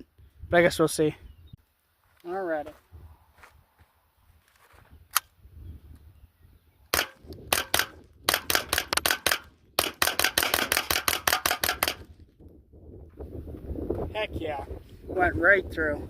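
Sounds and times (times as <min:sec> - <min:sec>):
rifle firing rapid shots: 0:07.0 - 0:12.1.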